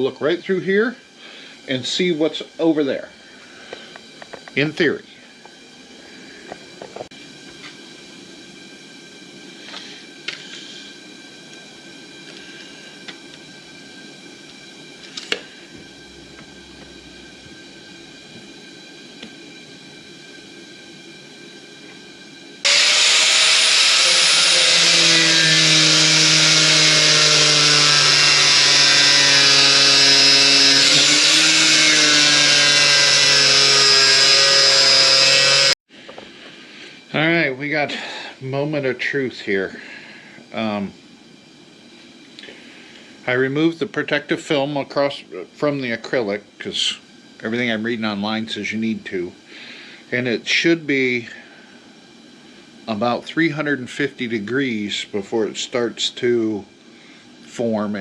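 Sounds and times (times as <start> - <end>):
power tool motor whine: 14.5 - 18.6, 22.6 - 35.8.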